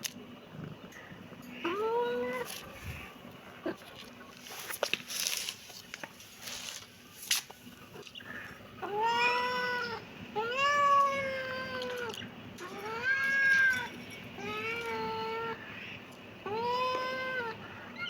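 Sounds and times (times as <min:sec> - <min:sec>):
faint clicks and rustles: 0:02.3 - 0:08.7
kitten meowing: 0:08.8 - 0:15.6.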